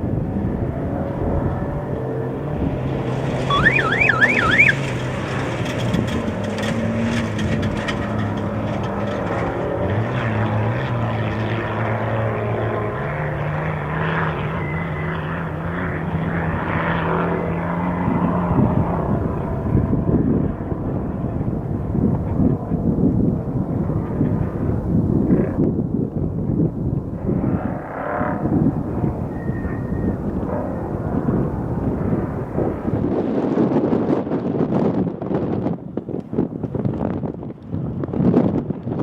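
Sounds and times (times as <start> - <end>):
race vehicle engine revving: 3.0 - 7.2
warbling electronic tone: 3.5 - 4.8.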